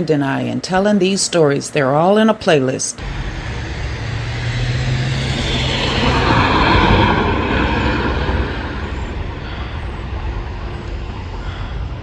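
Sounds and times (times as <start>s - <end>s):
vehicle passing on road: 3.0s - 12.0s.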